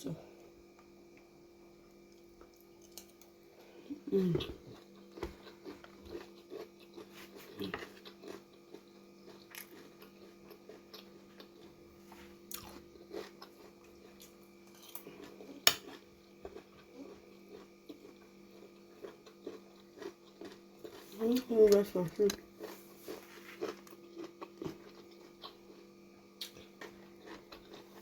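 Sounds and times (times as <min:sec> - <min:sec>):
faint steady hum: 0:00.0 - 0:28.0
soft chewing and crunching: 0:00.1 - 0:28.0.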